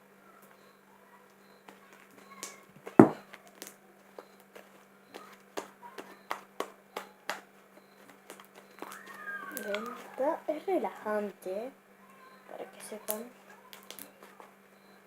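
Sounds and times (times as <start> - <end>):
loud thump: 3.0 - 3.2
slime popping and clicking: 8.2 - 10.0, 13.0 - 14.3.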